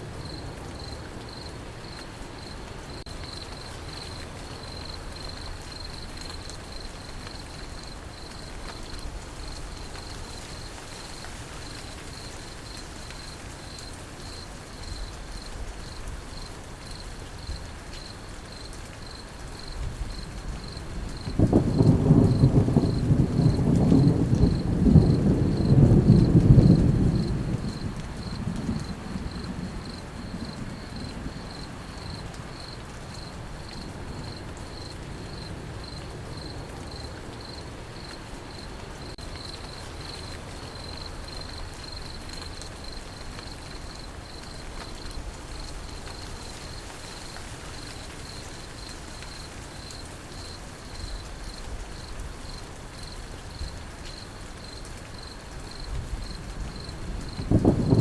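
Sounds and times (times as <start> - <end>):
rain hissing: 0.0 - 58.0
crickets chirping: 0.2 - 58.0
low thunder rumble: 19.8 - 34.4, 55.8 - 58.0.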